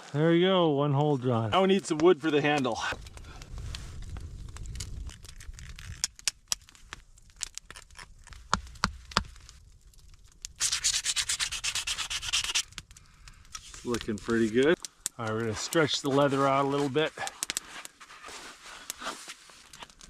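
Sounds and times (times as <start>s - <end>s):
hand sanding strokes: 10.6s - 12.6s.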